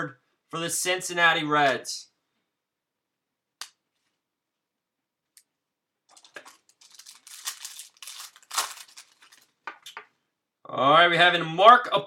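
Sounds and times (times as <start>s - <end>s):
card pack wrapper tearing: 6.1s - 9.6s.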